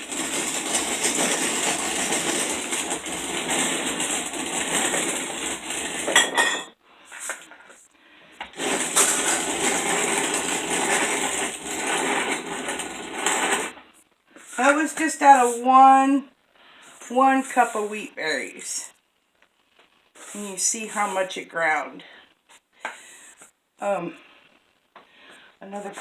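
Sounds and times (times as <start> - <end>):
hand-cranked grain mill grinding: 0.0 - 6.3, 8.4 - 13.8.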